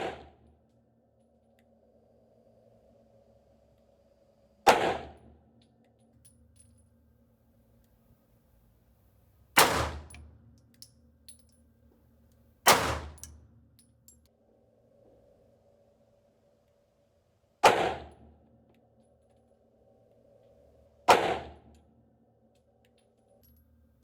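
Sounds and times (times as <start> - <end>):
pistol shots: 4.7 - 5.1, 9.6 - 10.2, 12.7 - 13.3, 17.6 - 18.1, 21.1 - 21.5.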